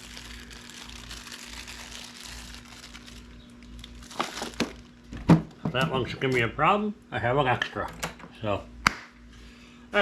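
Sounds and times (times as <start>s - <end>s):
bag crinkling and rustling: 0.0s - 5.1s.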